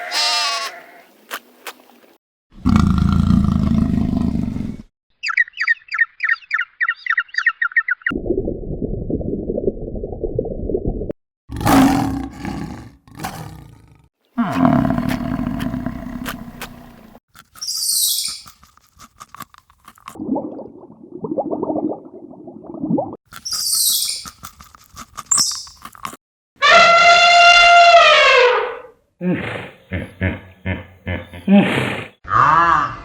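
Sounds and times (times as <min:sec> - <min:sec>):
deep roaring animal call: 0:02.6 - 0:04.9, 0:11.5 - 0:17.2.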